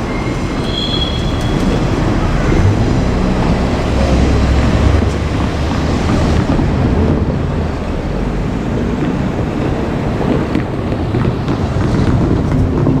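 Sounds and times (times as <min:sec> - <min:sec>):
diesel railcars running past: 0:00.0 - 0:13.0
wind buffeting microphone: 0:00.0 - 0:13.0.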